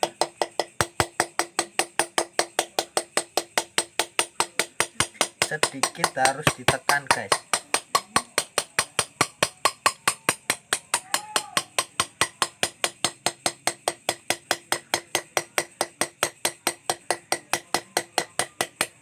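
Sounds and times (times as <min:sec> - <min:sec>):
hammer tapping metal chisel: 0:00.0 - 0:19.0.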